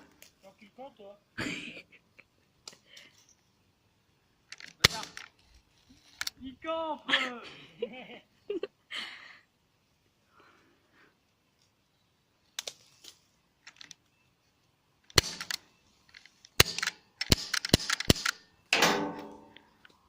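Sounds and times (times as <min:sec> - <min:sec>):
airsoft gun cracks: 0:04.5 - 0:05.3, 0:15.1 - 0:15.6, 0:16.5 - 0:19.6.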